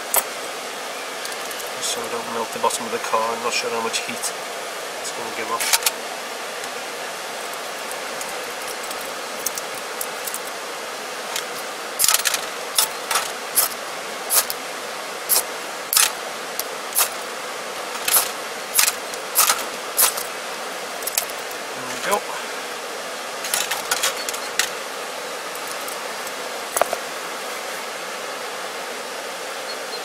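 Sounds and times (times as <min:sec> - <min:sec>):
steady hiss: 0:00.0 - 0:30.0
metal stove and kettle clinking: 0:11.3 - 0:14.6, 0:23.4 - 0:24.8.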